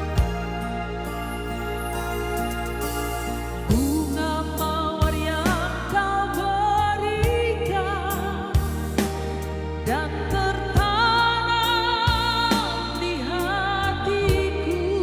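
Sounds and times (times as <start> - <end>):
bass and beat: 0.0 - 15.0
person singing: 3.7 - 9.1.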